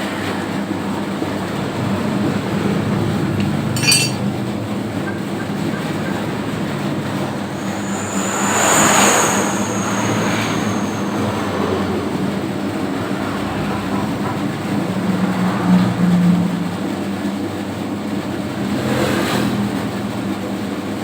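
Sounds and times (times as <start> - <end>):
whooshing with high whine: 6.9 - 13.4.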